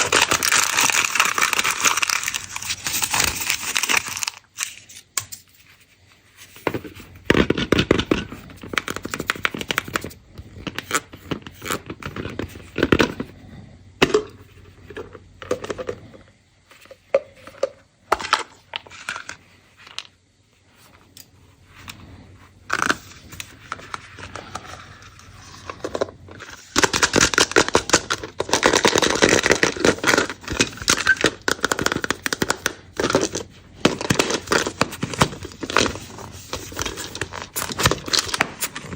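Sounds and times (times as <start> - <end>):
candy wrappers crinkling: 0.0 - 5.3, 7.5 - 13.2, 22.7 - 38.9.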